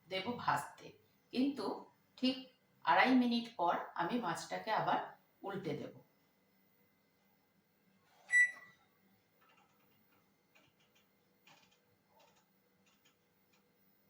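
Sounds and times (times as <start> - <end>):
short beep: 8.3 - 8.7.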